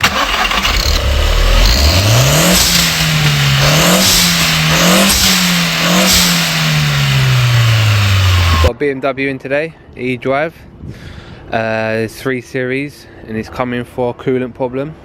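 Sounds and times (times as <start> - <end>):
car engine revving: 0.0 - 8.7
rushing noise: 0.1 - 8.7.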